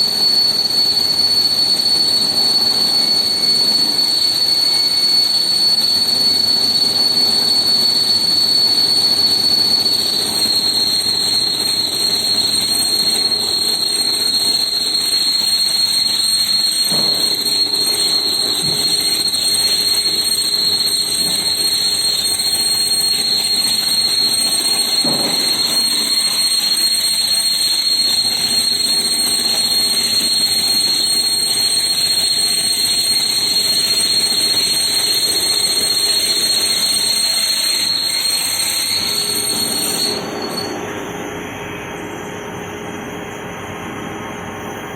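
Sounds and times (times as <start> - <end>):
milling machine whine: 0.0 - 44.9
machining noise: 9.6 - 42.2.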